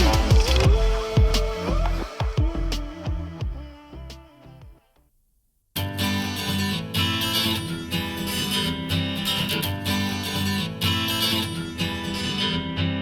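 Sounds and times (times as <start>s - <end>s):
acoustic guitar strumming: 0.0s - 3.7s, 5.8s - 13.0s
steady beat: 0.0s - 3.7s.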